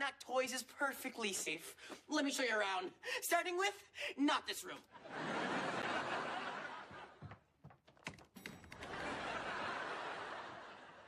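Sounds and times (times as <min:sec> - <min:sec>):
audience laughter: 0:05.0 - 0:07.4, 0:08.8 - 0:11.0.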